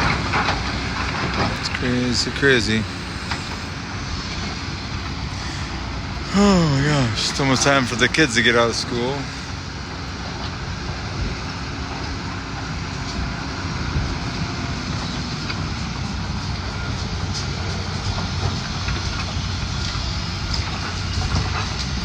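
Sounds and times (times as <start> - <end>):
diesel machinery running: 0.0 - 22.0.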